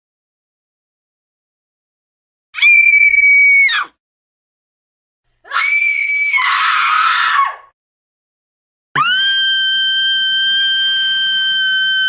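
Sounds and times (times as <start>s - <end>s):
woman screaming: 2.6s - 4.0s, 5.5s - 7.7s.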